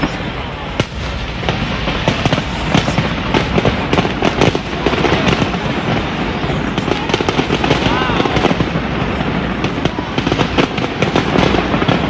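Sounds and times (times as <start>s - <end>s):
fireworks bangs and crackles: 0.0s - 12.0s.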